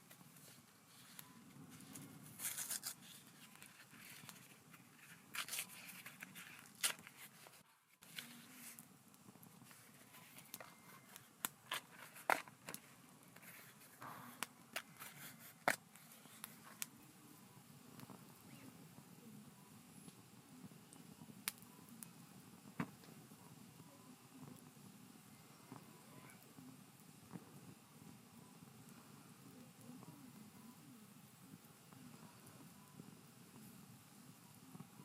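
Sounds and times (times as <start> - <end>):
crackling wood campfire: 0.0 - 35.0
paper rustling and crinkling: 0.1 - 8.8, 9.6 - 14.0, 14.7 - 16.8.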